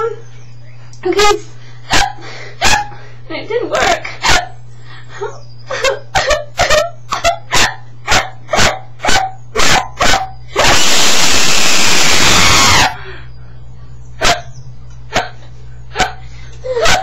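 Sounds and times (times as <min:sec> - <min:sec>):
loud hiss of noise: 0:10.5 - 0:13.2
person hiccuping like barks: 0:15.1 - 0:15.4.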